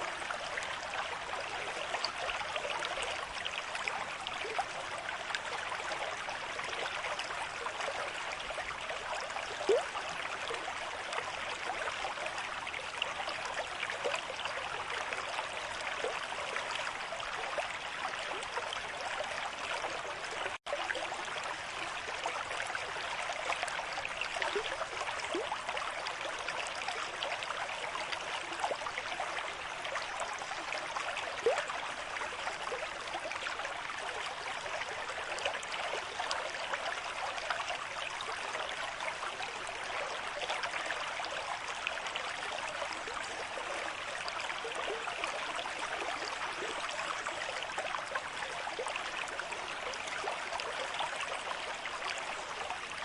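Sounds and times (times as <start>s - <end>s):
small water splashes: 9.5s - 53.0s.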